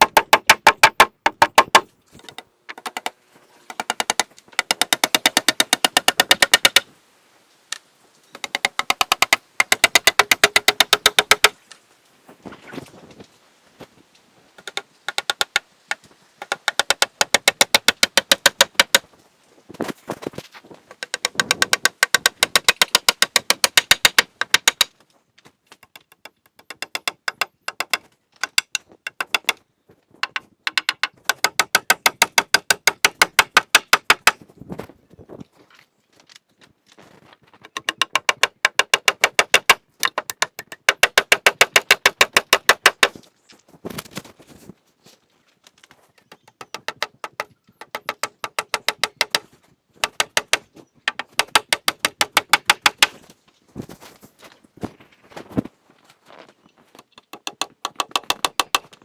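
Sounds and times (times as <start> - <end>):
rapid sharp clicking: 0.0 - 3.1, 3.7 - 6.8, 8.4 - 11.6, 14.6 - 19.0, 21.0 - 24.9, 30.7 - 34.4, 37.7 - 43.1, 50.0 - 53.1.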